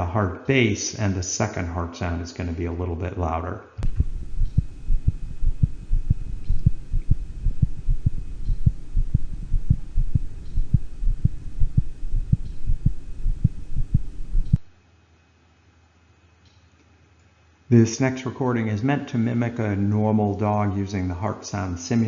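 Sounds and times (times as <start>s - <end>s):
low steady hum: 0.0s - 14.8s
dog heartbeat lub-dub: 3.8s - 14.7s.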